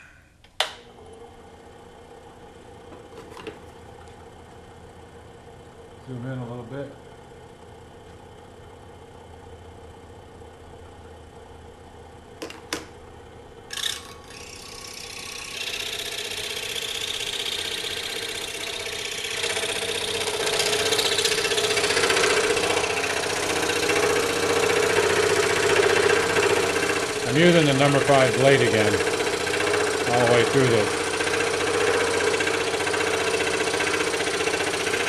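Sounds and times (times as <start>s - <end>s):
scroll saw cutting wood: 13.7s - 35.0s.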